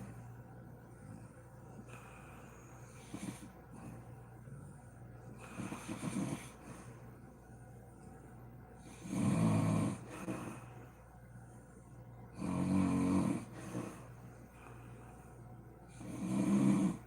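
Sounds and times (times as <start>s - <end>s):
woman snoring: 9.0s - 10.2s, 12.4s - 13.6s, 16.0s - 17.0s.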